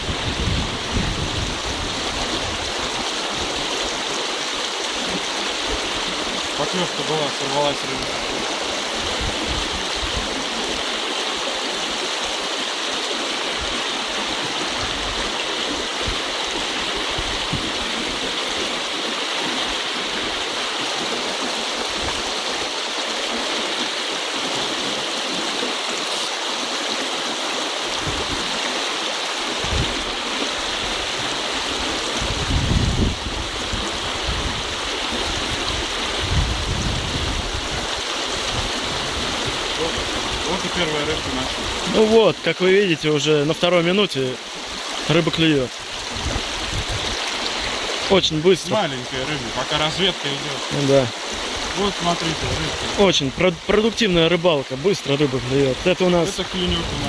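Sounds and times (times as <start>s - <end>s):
river water rushing over stones: 0.0s - 57.0s
low bumps: 28.0s - 28.5s.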